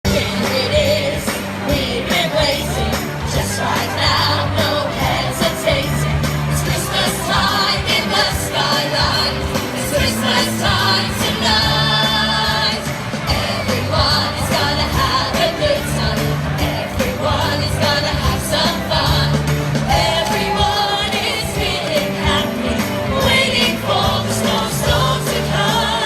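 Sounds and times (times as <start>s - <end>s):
upbeat pop song with singing: 0.1s - 26.0s.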